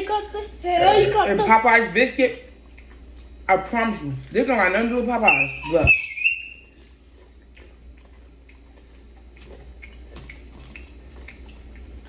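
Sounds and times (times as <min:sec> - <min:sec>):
close-up chewing: 0:02.5 - 0:03.4, 0:06.6 - 0:12.0
wet mouth clicks: 0:07.4 - 0:12.0.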